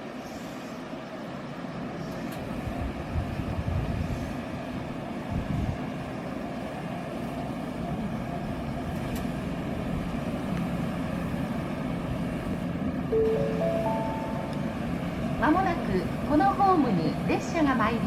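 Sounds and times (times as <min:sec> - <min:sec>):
electric train rumbling: 0:00.0 - 0:18.0
electronic chime of rising notes: 0:13.2 - 0:14.7.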